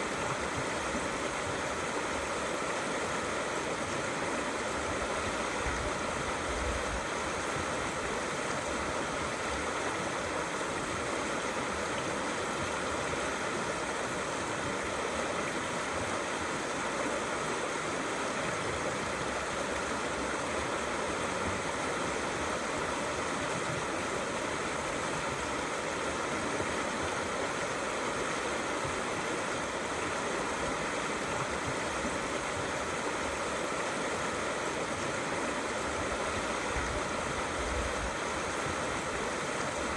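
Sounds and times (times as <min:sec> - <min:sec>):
river flowing over stones: 0:00.0 - 0:39.9.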